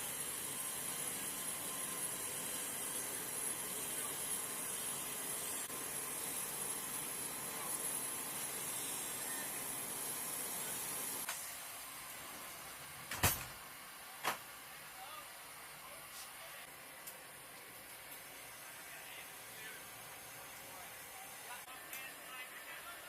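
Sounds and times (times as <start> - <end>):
steady hiss: 0.0 - 23.0.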